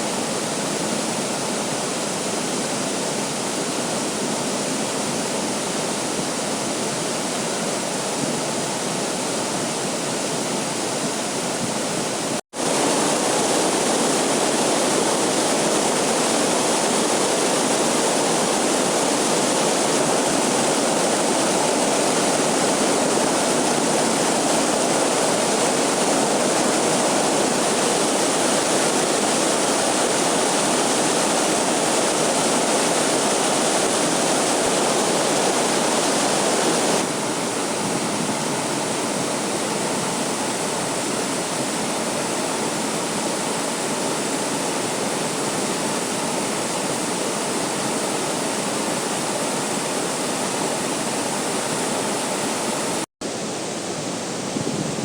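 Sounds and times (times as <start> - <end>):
waterfall rushing: 12.6 - 37.9.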